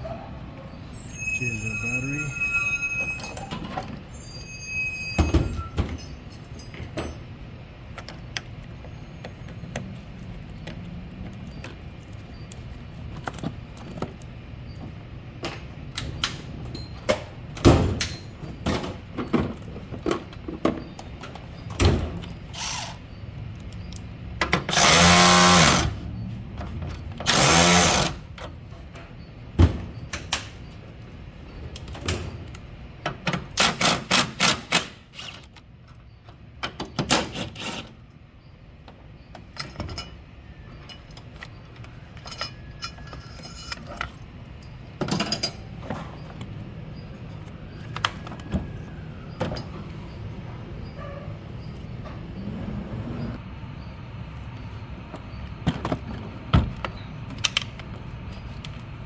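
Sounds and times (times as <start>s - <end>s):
power tool bursts: 24.7s - 26.0s, 27.3s - 28.2s.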